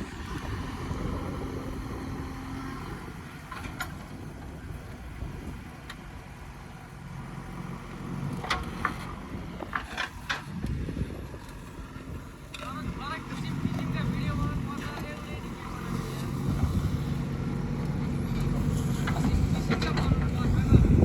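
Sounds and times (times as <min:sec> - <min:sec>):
excavator diesel engine running: 0:00.0 - 0:21.0.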